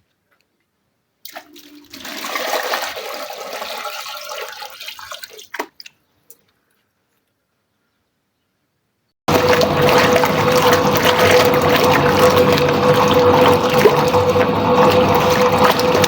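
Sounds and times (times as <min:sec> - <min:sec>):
water rushing: 0:01.3 - 0:05.7, 0:09.3 - 0:16.0.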